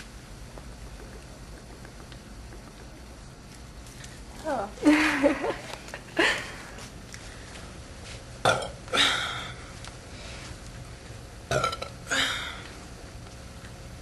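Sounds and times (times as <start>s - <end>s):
women burping: 8.5s - 9.6s, 11.5s - 12.6s.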